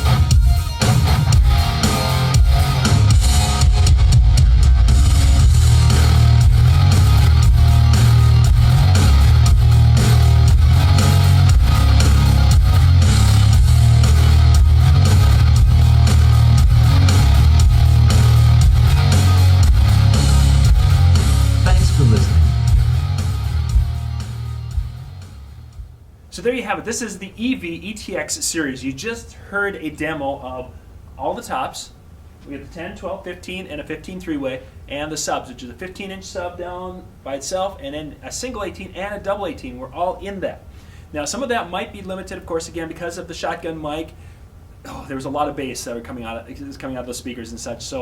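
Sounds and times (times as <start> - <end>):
loud rock music: 0.0 - 25.8.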